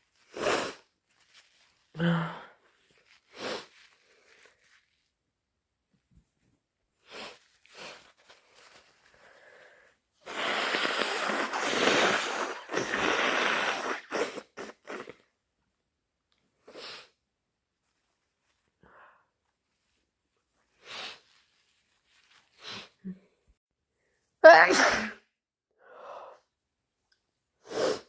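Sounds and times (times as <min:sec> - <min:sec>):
person blowing nose: 0:00.1 - 0:01.0, 0:03.0 - 0:04.6, 0:07.0 - 0:15.3, 0:16.6 - 0:17.2, 0:20.8 - 0:21.5, 0:22.5 - 0:23.1, 0:27.6 - 0:28.0
person sniffing: 0:00.2 - 0:00.9, 0:03.2 - 0:04.4, 0:07.0 - 0:08.2, 0:09.2 - 0:15.2, 0:27.6 - 0:28.0.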